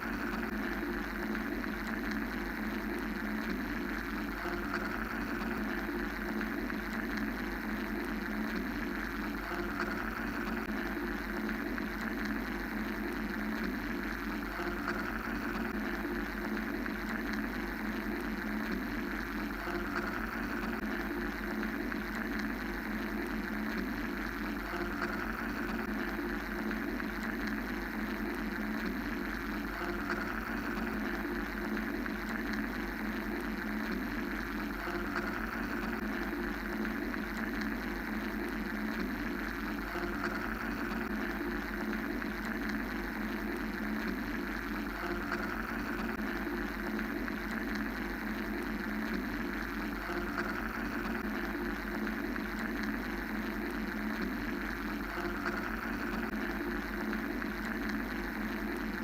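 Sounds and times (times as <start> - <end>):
mechanical hum with low rumble: 0.0 - 59.0.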